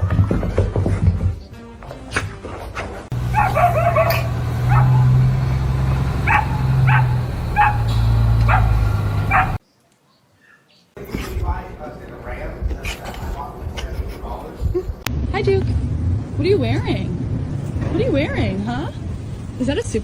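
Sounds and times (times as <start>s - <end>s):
dog barking and yipping: 3.1s - 5.2s, 6.2s - 9.6s.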